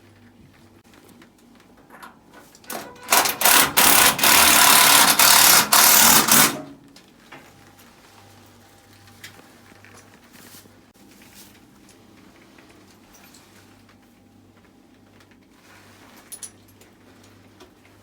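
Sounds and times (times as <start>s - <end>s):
power drill whirring: 3.0s - 6.7s.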